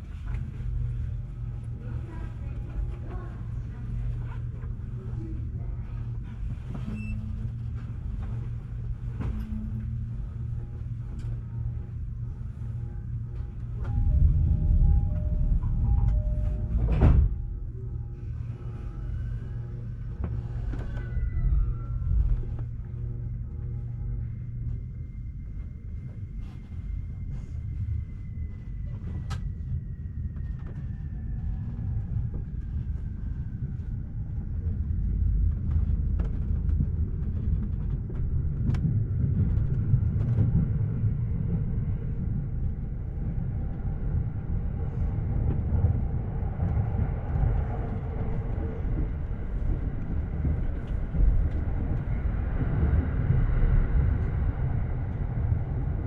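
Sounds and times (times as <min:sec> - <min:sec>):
train wheels rumbling on rail: 0:00.0 - 0:56.0
train motor whine: 0:13.2 - 0:23.0.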